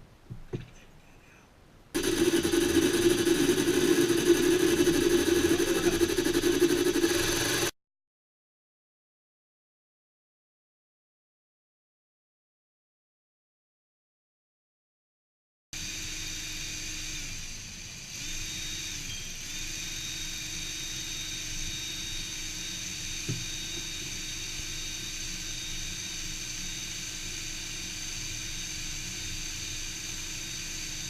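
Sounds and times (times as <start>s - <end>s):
electric drill boring metal: 2.0s - 7.7s, 15.8s - 31.0s.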